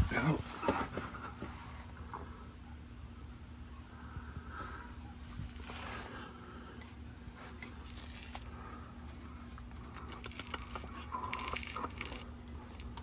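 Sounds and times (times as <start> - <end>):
hands working on exhaust: 0.0 - 1.9, 5.1 - 13.0.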